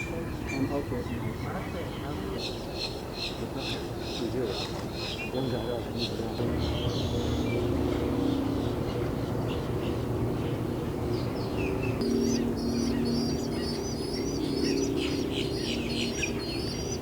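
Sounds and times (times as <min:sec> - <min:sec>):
small birds chirping: 0:00.0 - 0:17.0
steady low hum: 0:06.2 - 0:17.0.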